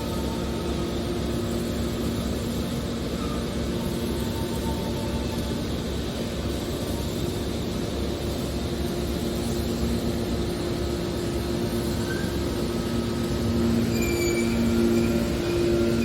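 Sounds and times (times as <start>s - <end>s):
hydraulic baler humming: 10.8s - 16.0s.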